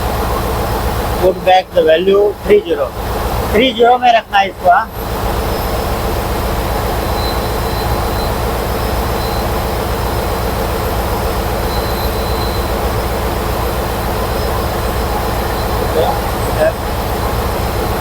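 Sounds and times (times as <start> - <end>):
boiler burner roar: 0.0 - 18.0
faint high beep: 7.1 - 8.4, 11.7 - 12.7.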